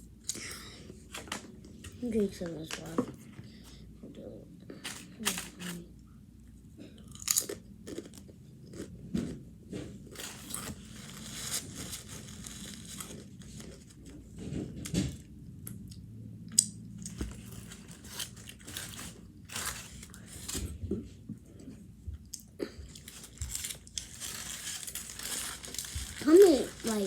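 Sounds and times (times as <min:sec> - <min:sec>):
person chewing crunchy food: 0:07.0 - 0:13.7.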